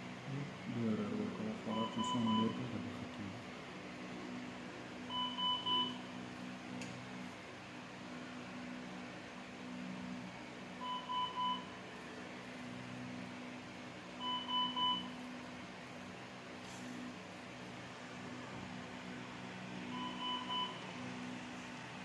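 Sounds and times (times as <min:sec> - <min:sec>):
low equipment hum: 0:00.0 - 0:22.0
monitor alarm beeps: 0:01.7 - 0:02.8, 0:05.1 - 0:06.1, 0:10.8 - 0:11.8, 0:14.2 - 0:15.2, 0:19.9 - 0:20.9.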